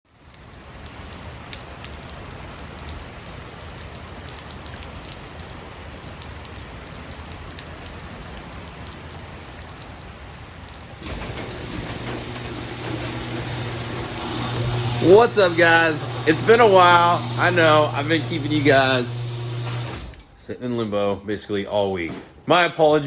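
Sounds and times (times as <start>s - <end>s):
steady rain falling: 0.1s - 15.0s.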